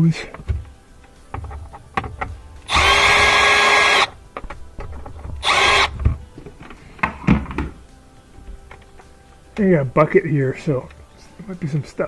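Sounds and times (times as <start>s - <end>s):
handling knocks: 0.0s - 12.0s
power drill whirring: 0.4s - 4.3s, 4.9s - 7.7s.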